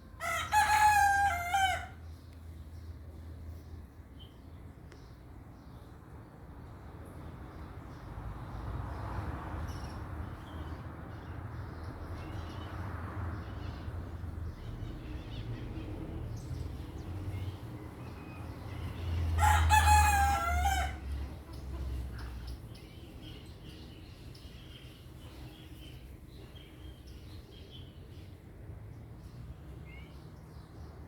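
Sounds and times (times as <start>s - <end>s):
rooster crowing: 0.2s - 2.0s, 19.4s - 21.1s
small birds chirping: 21.4s - 31.0s.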